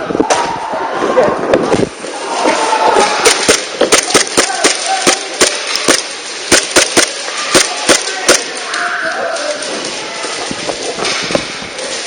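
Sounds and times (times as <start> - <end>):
airsoft gun shots: 3.2 - 8.6.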